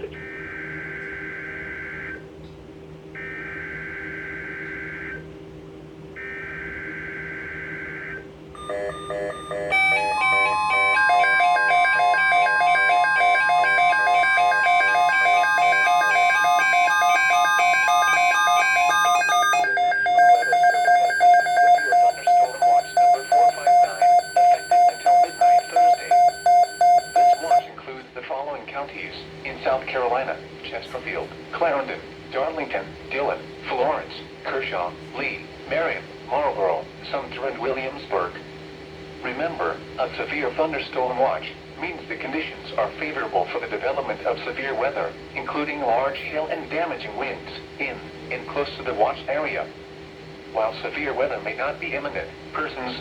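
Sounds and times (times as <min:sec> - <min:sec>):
alarm beeping: 0:00.1 - 0:02.2, 0:03.2 - 0:05.2, 0:06.2 - 0:27.7
long steady alert tone: 0:00.1 - 0:02.2, 0:03.2 - 0:05.3, 0:06.2 - 0:27.7.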